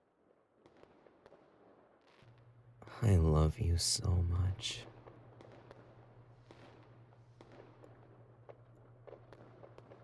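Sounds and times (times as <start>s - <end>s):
small firework crackles and pops: 0.0s - 2.5s, 4.8s - 10.0s
low steady hum: 2.8s - 4.8s.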